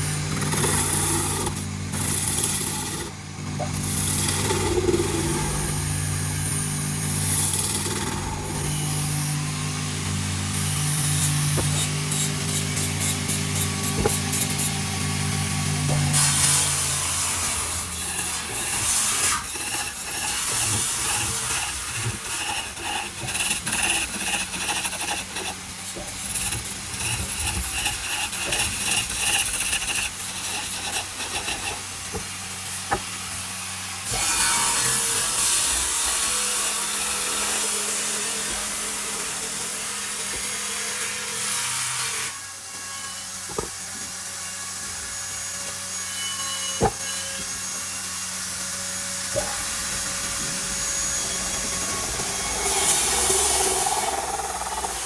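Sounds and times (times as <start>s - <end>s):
power tool rhythmic scraping: 0.0s - 55.0s
hiss of sanding wood: 18.2s - 32.3s.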